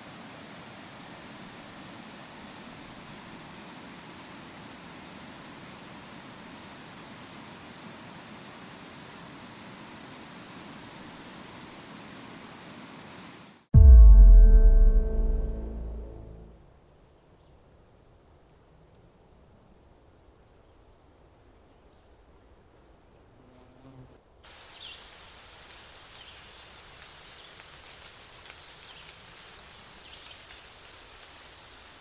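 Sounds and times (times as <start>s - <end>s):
deep boom: 13.8s - 16.6s
faint insect chirps: 24.4s - 32.0s
hissy insect bed: 24.4s - 32.0s.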